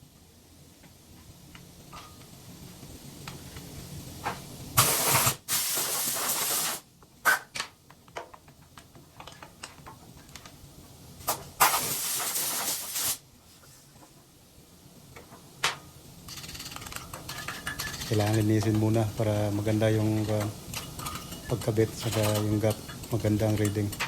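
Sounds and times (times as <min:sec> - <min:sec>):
compressed air hissing: 0:04.8 - 0:07.5, 0:11.3 - 0:13.9.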